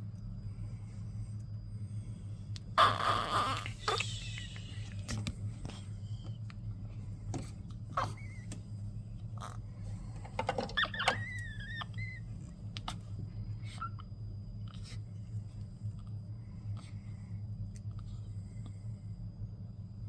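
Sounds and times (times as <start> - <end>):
steady low hum: 0.0 - 20.0
newborn baby squeaking: 2.8 - 4.1, 8.0 - 8.5, 10.7 - 12.2.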